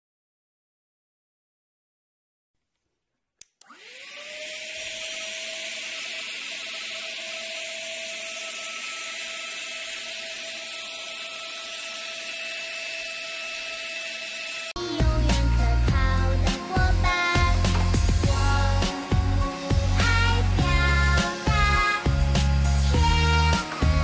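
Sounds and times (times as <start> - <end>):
handheld vacuum motor whining: 3.6 - 14.8.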